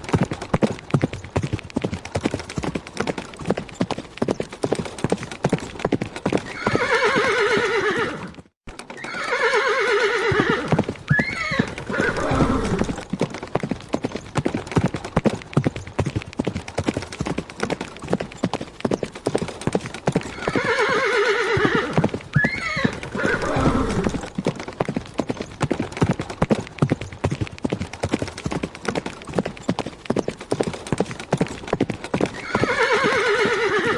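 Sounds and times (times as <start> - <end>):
horse hoofbeats galloping: 0.0 - 33.9
horse neighing: 6.4 - 8.4, 9.0 - 13.0, 20.3 - 24.3, 32.3 - 33.9.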